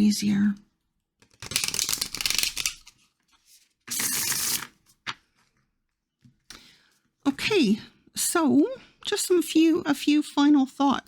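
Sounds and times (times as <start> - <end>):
cards being shuffled: 1.2 - 5.2.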